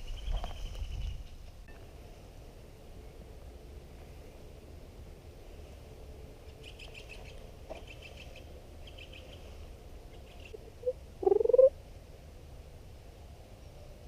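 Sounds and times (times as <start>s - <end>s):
birds chirping: 10.4s - 11.7s
loud rising bird call: 10.8s - 11.7s.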